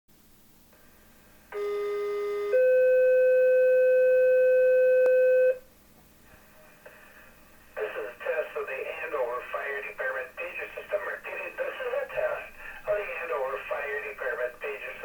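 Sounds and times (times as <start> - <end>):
two-tone pager alert: 1.6 - 5.6.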